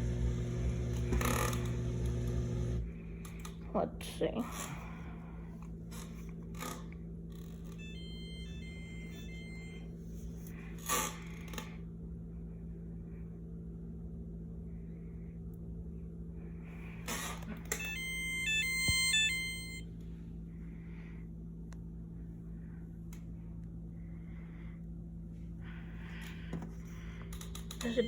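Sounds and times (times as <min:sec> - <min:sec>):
low machine hum: 0:00.0 - 0:28.0
electronic beeps: 0:17.8 - 0:19.8.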